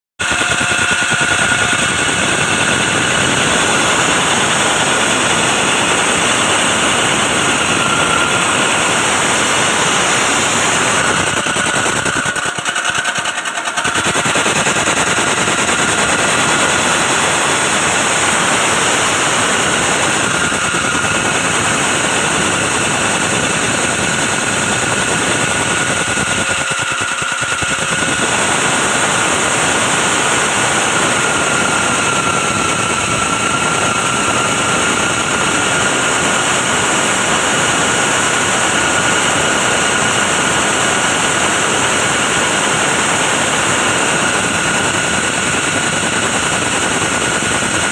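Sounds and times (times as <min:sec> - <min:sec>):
milling machine high whine: 0:00.2 - 0:47.9.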